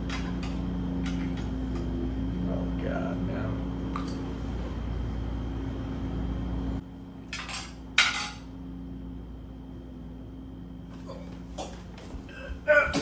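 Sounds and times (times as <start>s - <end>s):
steady low hum: 0.0s - 13.0s
cutlery clinking against dish: 7.3s - 8.5s.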